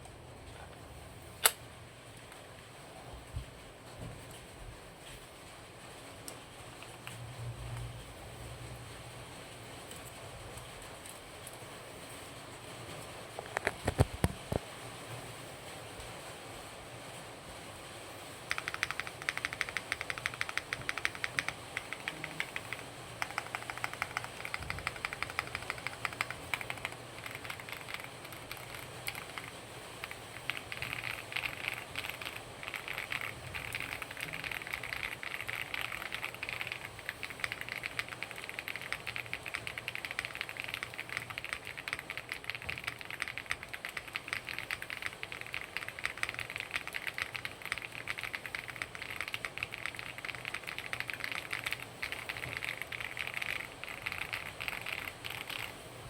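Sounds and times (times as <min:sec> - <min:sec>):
mechanical keyboard typing: 0:18.5 - 0:55.8.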